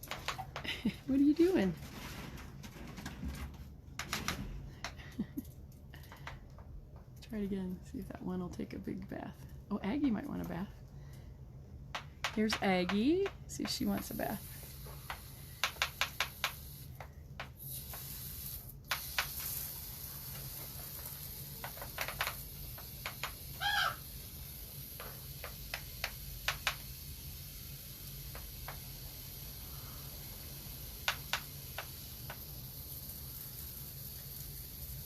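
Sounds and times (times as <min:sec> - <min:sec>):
spray bottle clicks: 0:18.9 - 0:19.6
wavering bird call: 0:23.6 - 0:24.0.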